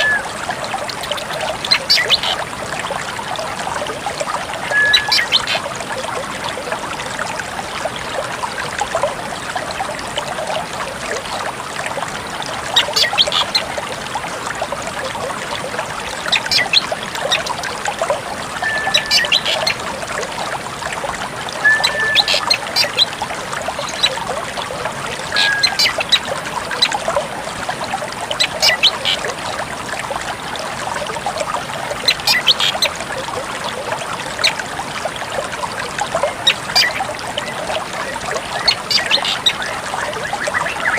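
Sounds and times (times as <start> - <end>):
running water rushing: 0.0 - 40.9
bird calling sharp high notes: 4.7 - 5.6, 18.6 - 19.7.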